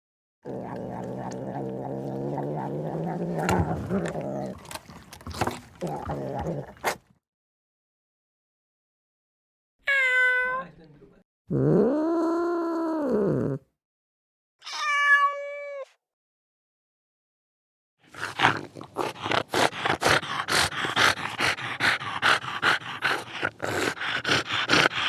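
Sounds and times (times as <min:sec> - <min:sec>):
cat meowing: 0:09.9 - 0:10.6, 0:14.6 - 0:15.9
rapid breathy panting: 0:18.8 - 0:25.0.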